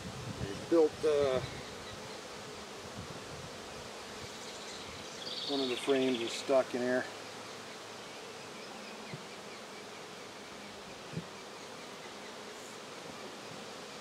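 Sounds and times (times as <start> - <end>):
bees buzzing: 0.0 - 14.0.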